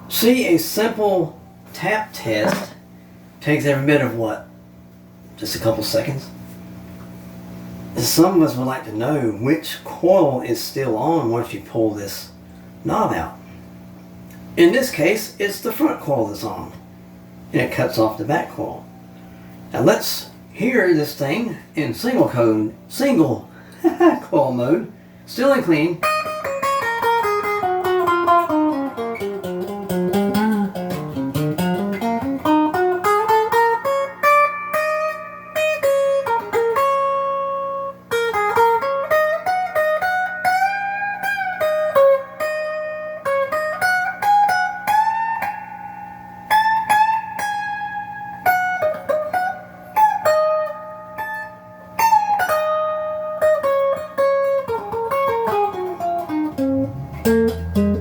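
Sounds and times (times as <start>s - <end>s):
clean electric guitar playing: 26.0s - 58.0s.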